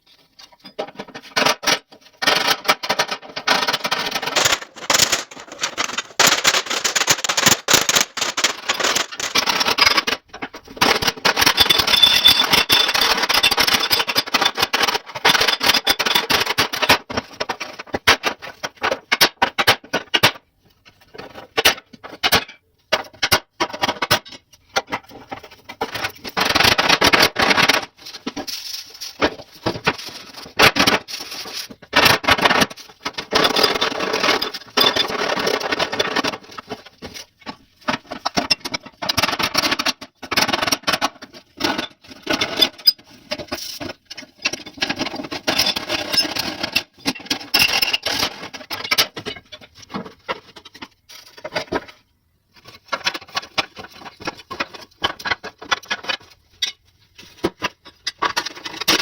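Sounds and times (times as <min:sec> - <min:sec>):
scraping and rubbing: 0:02.8 - 0:13.6.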